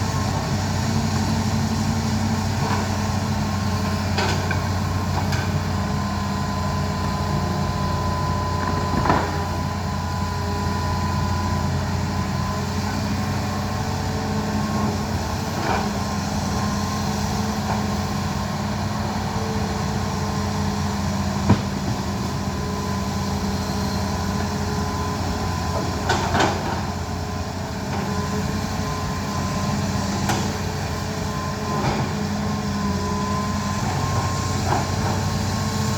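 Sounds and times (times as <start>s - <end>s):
excavator diesel engine running: 0.0s - 35.9s.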